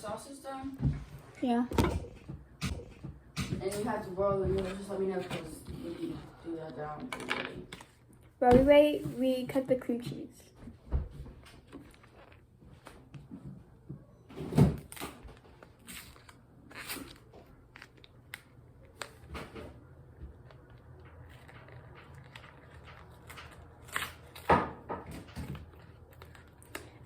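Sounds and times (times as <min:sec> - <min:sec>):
kitchen items knocking and clattering: 0:00.0 - 0:06.2, 0:24.4 - 0:25.7.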